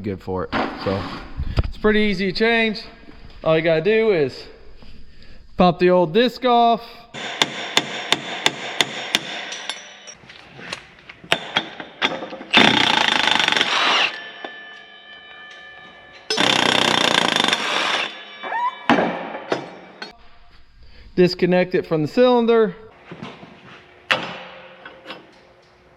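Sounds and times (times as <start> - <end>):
impact wrench hammering: 7.2 - 10.2, 11.3 - 14.9, 16.1 - 20.2.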